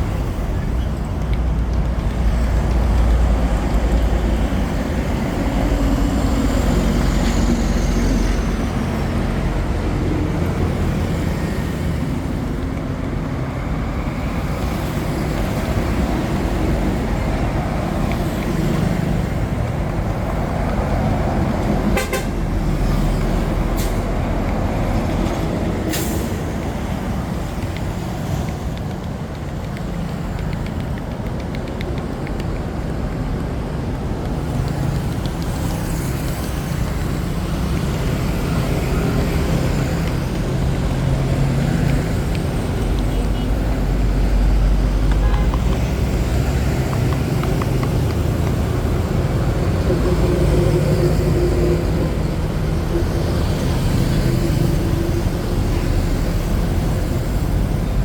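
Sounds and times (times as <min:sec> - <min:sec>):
street traffic rumble: 0:00.0 - 0:58.0
vehicles passing: 0:00.0 - 0:58.0
sharp clicks: 0:00.1 - 0:04.7, 0:27.3 - 0:50.0
car horn toots: 0:22.0 - 0:22.4.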